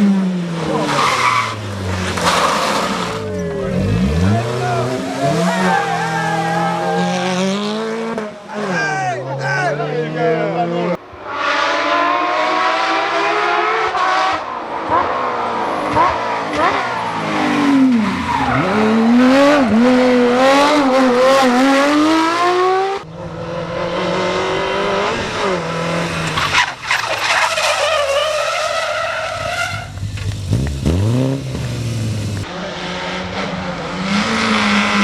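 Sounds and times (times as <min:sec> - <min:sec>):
rally car engines revving: 0:00.0 - 0:35.0
tyres sliding: 0:26.0 - 0:30.8.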